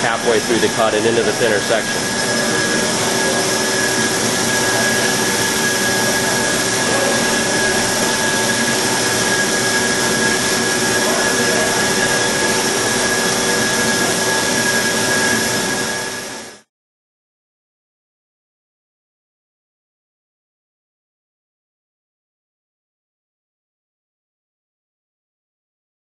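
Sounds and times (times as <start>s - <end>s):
bandsaw cutting metal with whine: 0.0s - 16.7s.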